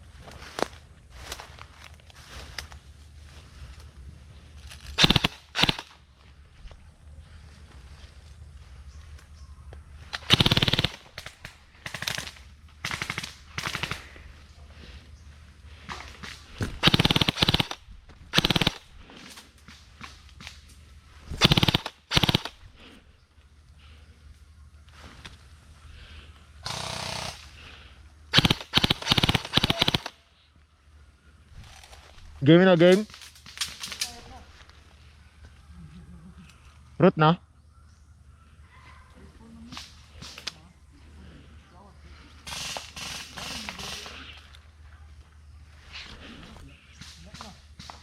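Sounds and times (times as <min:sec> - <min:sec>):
airsoft gun bursts: 0:05.0 - 0:05.9, 0:10.1 - 0:14.1, 0:16.8 - 0:18.9, 0:21.4 - 0:22.6, 0:26.6 - 0:27.5, 0:28.3 - 0:30.2.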